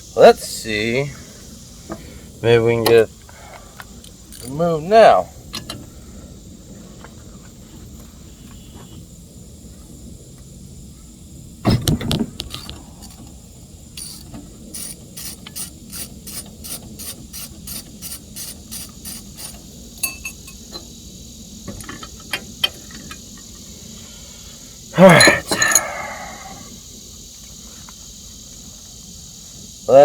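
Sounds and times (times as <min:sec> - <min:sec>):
socket ratchet clicking: 0:14.0 - 0:20.5.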